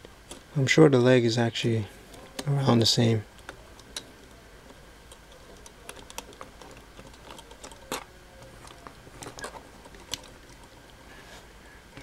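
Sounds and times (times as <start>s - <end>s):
plastic model parts clicking: 5.1s - 10.7s.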